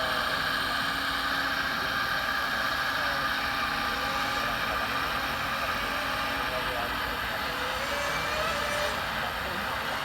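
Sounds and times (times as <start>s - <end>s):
model trucks humming: 0.0s - 10.0s.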